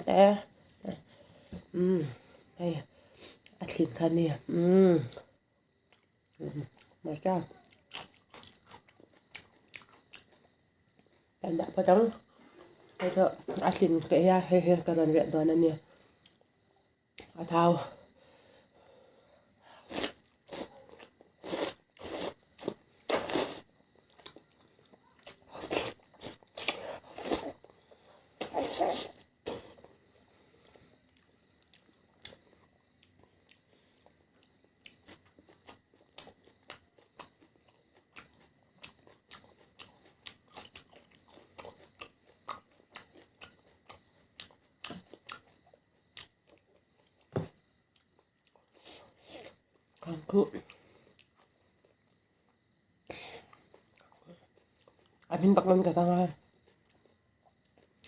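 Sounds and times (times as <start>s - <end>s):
person chewing crunchy food: 5.3s - 11.4s, 19.8s - 55.3s.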